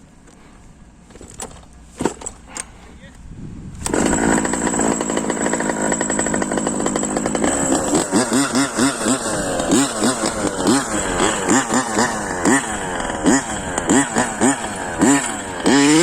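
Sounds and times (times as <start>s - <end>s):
two-stroke engine revving: 3.8s - 16.0s.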